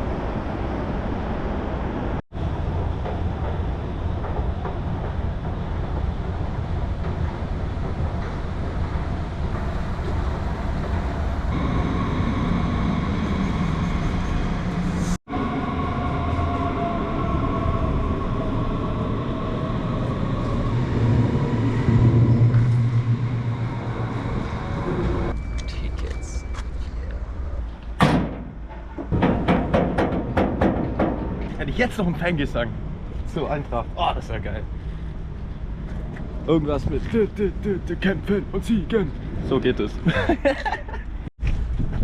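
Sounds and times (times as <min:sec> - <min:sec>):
train rumbling: 0:00.0 - 0:42.0
whine sliding in pitch: 0:10.3 - 0:26.6.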